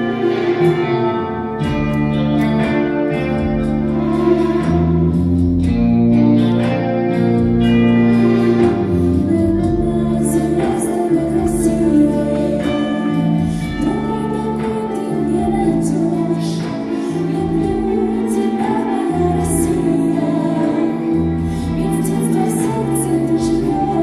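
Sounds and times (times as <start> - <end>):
bass line: 0.0 - 16.6
person singing: 8.1 - 24.0.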